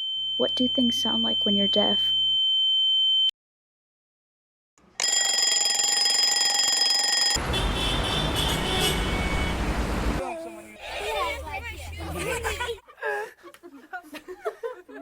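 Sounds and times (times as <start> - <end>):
loud alarm ringing: 5.0 - 10.2
loud rushing noise: 7.4 - 10.2.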